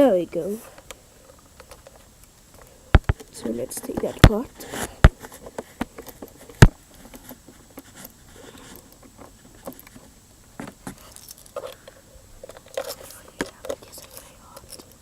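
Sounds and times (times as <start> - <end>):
small clicks of parts handled: 11.1 - 15.0.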